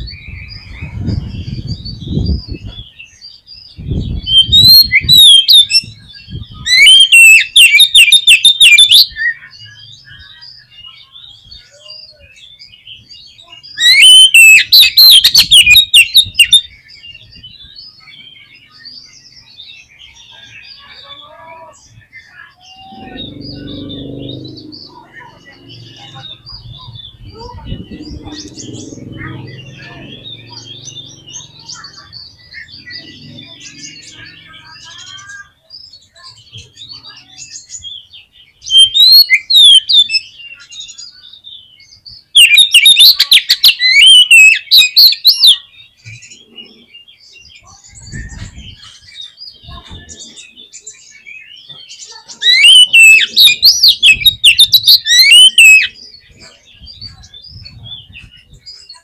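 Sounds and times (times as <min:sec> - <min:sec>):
faint bird twittering: 0:00.0 - 0:59.0
songbird singing rapid varied notes: 0:21.8 - 0:59.0.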